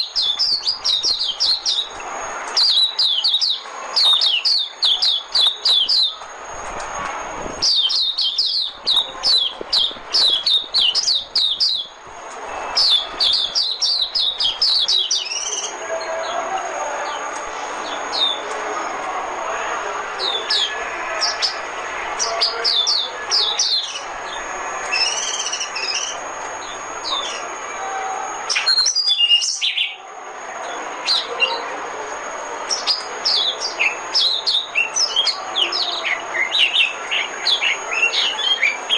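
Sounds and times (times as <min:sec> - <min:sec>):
bird chirping song: 0:00.0 - 0:18.6, 0:20.2 - 0:30.0, 0:32.6 - 0:38.9
steady background noise: 0:00.0 - 0:38.9.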